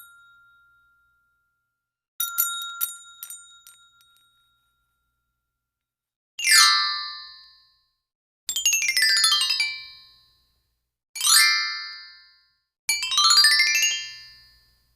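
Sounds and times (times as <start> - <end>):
tinkling bell tones: 0.0 - 5.6.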